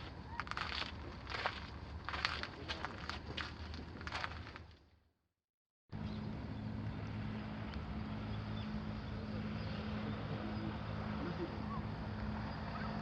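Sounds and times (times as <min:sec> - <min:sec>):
outdoor background noise: 0:00.0 - 0:05.1, 0:05.9 - 0:13.0
low engine drone: 0:06.0 - 0:13.0.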